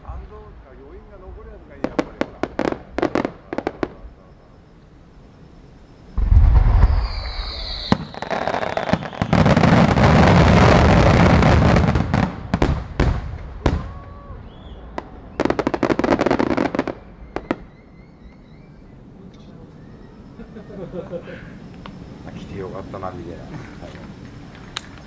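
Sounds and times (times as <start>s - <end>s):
firework crackling: 0.0s - 4.5s, 5.7s - 17.7s
firework bursts: 1.3s - 17.8s
falling whistle: 6.1s - 10.1s, 13.6s - 21.0s
firework boom: 6.2s - 16.0s.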